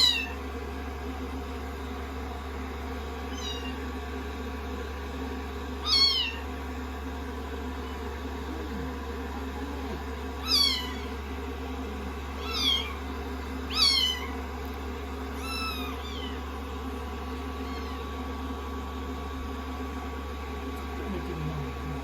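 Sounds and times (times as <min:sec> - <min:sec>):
kitten mewing: 0:00.0 - 0:00.4, 0:03.3 - 0:03.9, 0:05.8 - 0:06.5, 0:09.9 - 0:11.2, 0:12.3 - 0:14.4, 0:15.3 - 0:16.5, 0:17.6 - 0:18.2
hair dryer humming: 0:00.0 - 0:22.0.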